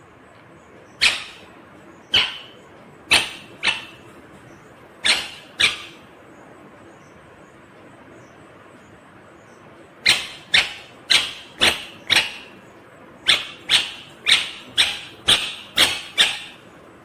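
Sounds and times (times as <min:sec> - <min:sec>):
parakeet calling: 0:00.8 - 0:06.2, 0:09.5 - 0:16.9.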